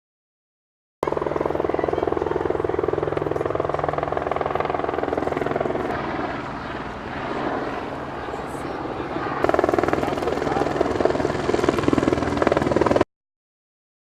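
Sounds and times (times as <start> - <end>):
helicopter turbine and rotor: 1.0 - 13.1.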